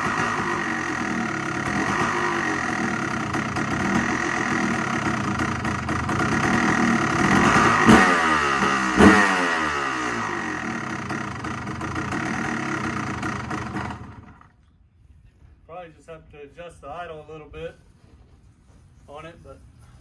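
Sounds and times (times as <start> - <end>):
motorcycle engine revving: 0.0 - 14.5.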